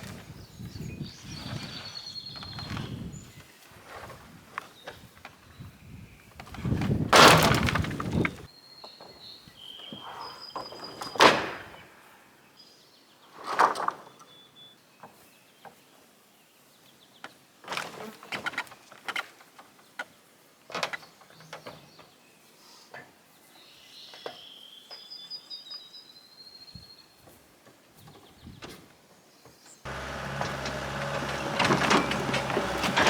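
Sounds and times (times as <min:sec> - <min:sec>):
wood knocking and clattering: 0:06.4 - 0:09.2, 0:29.9 - 0:33.0.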